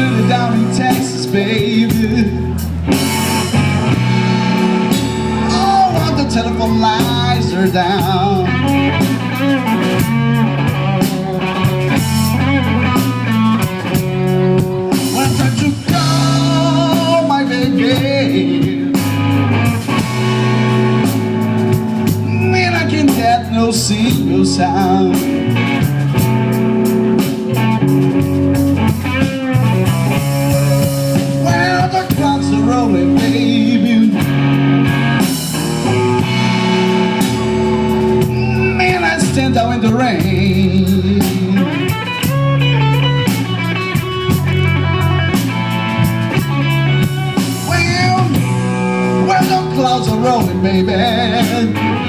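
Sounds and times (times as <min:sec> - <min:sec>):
person singing: 0:00.0 - 0:02.6, 0:05.4 - 0:09.0, 0:14.6 - 0:19.2, 0:22.3 - 0:25.8, 0:31.4 - 0:34.4, 0:36.0 - 0:42.0, 0:47.4 - 0:52.0
drum kit beat: 0:00.0 - 0:52.0
electric bass: 0:00.0 - 0:52.0
electric guitar bent notes: 0:00.0 - 0:52.0
live blues band: 0:00.0 - 0:52.0.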